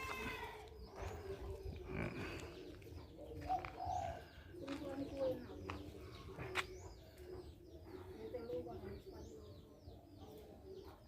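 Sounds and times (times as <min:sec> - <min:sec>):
small birds chirping: 0:00.0 - 0:11.0
dove cooing: 0:01.0 - 0:08.0.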